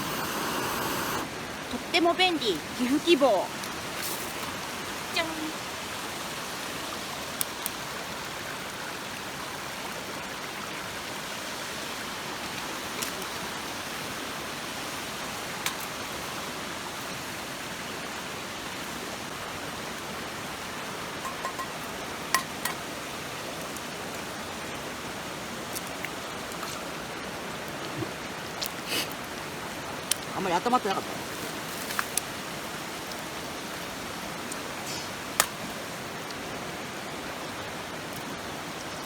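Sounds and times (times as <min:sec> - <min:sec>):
river rushing: 0:00.0 - 0:03.0.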